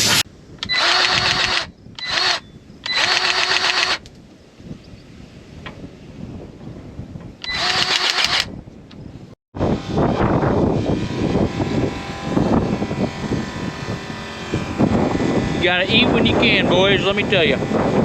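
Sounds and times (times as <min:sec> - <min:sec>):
loud hiss: 0:00.0 - 0:00.2
wind buffeting microphone: 0:00.0 - 0:18.0
engine running: 0:09.6 - 0:18.0.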